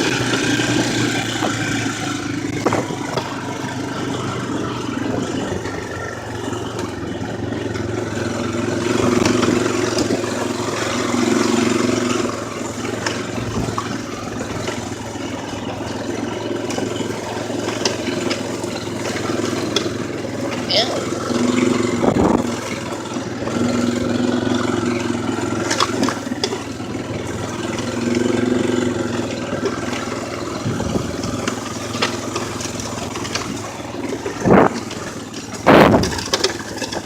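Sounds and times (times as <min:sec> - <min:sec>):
atv engine running: 0:00.0 - 0:37.0.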